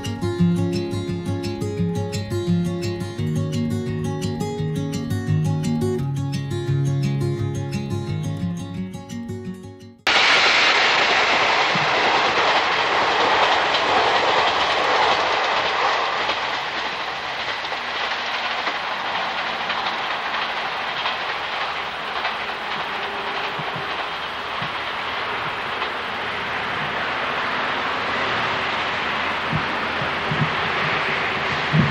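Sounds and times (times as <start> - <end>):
train rumbling past: 10.1 - 31.9
wheels clattering over rails: 11.4 - 31.9.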